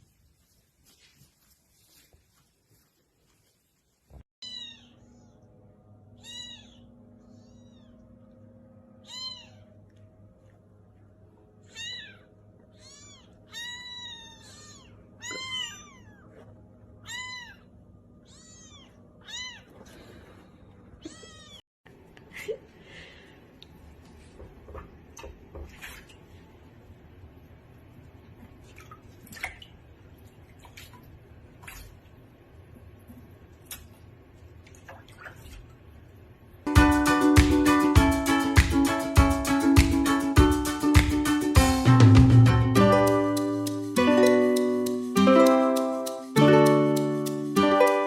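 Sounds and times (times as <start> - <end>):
faint steady hum: 0.0 - 25.2
cat meowing: 4.4 - 5.0, 6.2 - 8.0, 9.0 - 9.8, 11.6 - 16.4, 17.0 - 19.8, 21.0 - 21.6.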